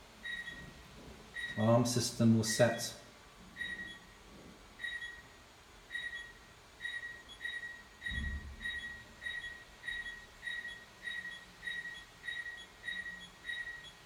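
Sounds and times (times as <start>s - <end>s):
alarm short high beeps: 5.9s - 14.0s
low thump: 8.1s - 8.8s.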